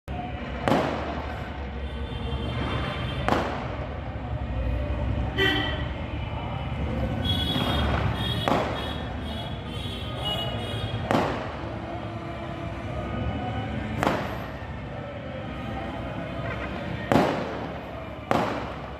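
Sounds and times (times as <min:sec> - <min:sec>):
music: 0:00.1 - 0:18.9
firecracker bangs: 0:00.6 - 0:01.5, 0:02.4 - 0:04.0, 0:07.2 - 0:09.4, 0:10.8 - 0:11.7, 0:14.0 - 0:14.6, 0:17.0 - 0:18.9.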